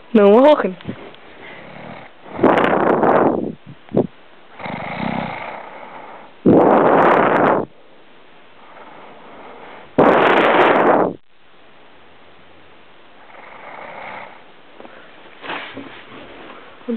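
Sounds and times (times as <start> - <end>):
soft breath: 0.9 - 2.4, 8.6 - 10.0, 14.3 - 16.9
person snoring: 1.4 - 3.2, 4.6 - 7.4.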